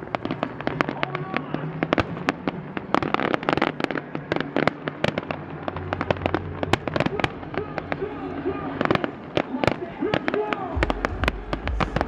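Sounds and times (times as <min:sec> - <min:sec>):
fireworks bangs and pops: 0:00.0 - 0:12.0
fireworks crackle: 0:00.0 - 0:12.0.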